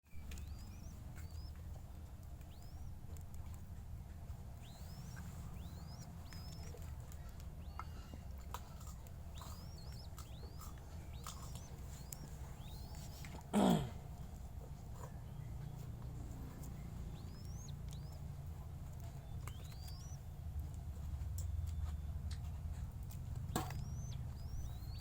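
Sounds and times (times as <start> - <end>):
baby dove squeaking: 0.1 - 1.7, 2.4 - 3.7, 4.5 - 13.4, 15.6 - 18.4, 19.0 - 20.3, 23.0 - 25.0.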